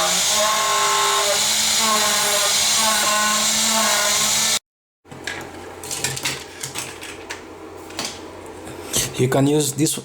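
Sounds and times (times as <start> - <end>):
milling machine motor whine: 0.0 - 4.6.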